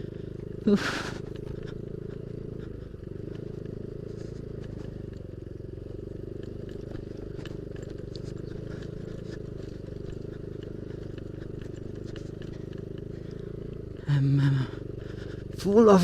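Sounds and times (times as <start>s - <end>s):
scooter engine running: 0.0s - 16.0s
small clicks and rattles: 1.3s - 14.0s.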